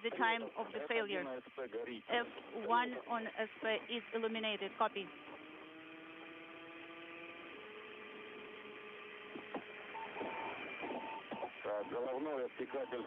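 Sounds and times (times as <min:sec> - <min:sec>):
radio static hiss: 0:00.0 - 0:05.4, 0:09.2 - 0:13.0
hum of steady tones: 0:00.0 - 0:13.0.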